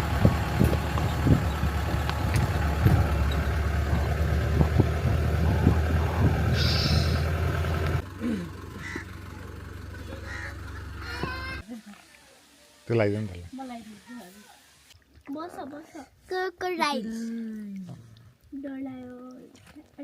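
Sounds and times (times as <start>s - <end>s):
vehicle rumbling: 0.0s - 12.6s
vehicle bumps: 0.2s - 6.6s.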